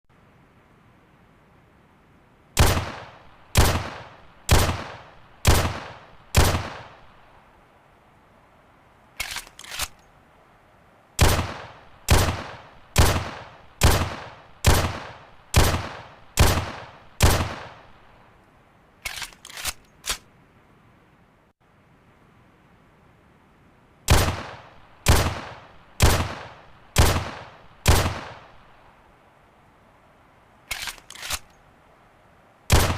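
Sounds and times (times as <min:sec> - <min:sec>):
pistol shots with ringing tail: 0:02.6 - 0:07.1, 0:11.2 - 0:17.9, 0:24.1 - 0:28.5
quieter short cracks: 0:09.2 - 0:10.1, 0:19.0 - 0:20.3, 0:30.7 - 0:31.6.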